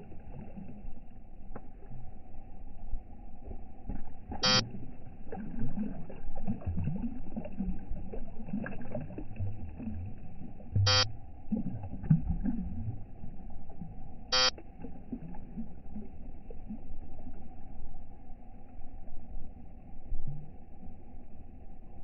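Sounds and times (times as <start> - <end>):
muffled low rumble: 0.0 - 22.0
short buzzy beeps: 4.4 - 4.7, 10.8 - 11.2, 14.3 - 14.6.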